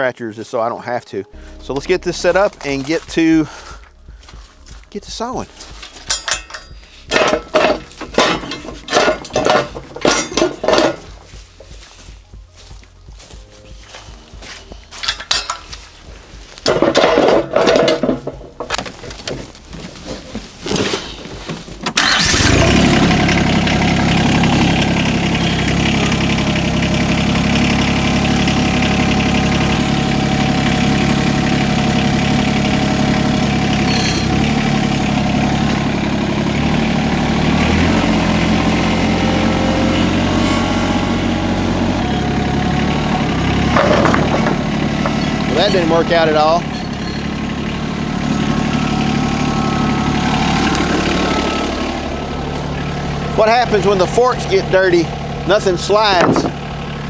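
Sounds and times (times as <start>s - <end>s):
engine starting and running: 1.4s - 57.0s
irregular clattering: 5.5s - 11.3s, 16.6s - 21.8s, 43.7s - 47.8s.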